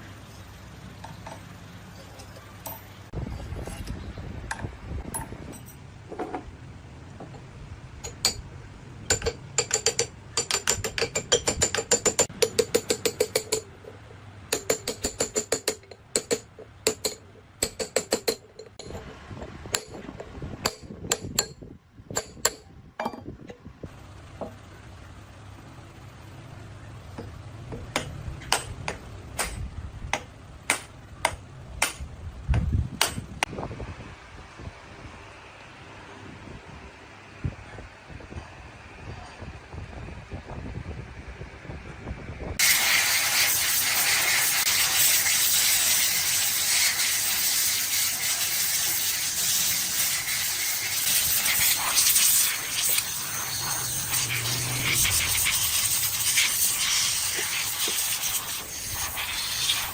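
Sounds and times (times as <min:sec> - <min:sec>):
hammer striking metal: 0:08.0 - 0:08.5, 0:09.1 - 0:13.7, 0:14.5 - 0:19.0, 0:27.2 - 0:32.1, 0:33.0 - 0:33.3.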